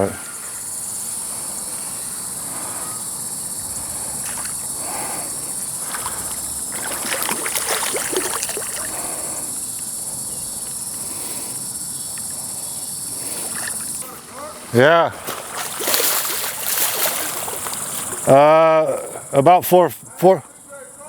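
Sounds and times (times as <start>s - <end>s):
high-pitched insect drone: 0.0s - 19.4s
fish splashing in shallow water: 3.2s - 10.0s, 12.0s - 18.4s.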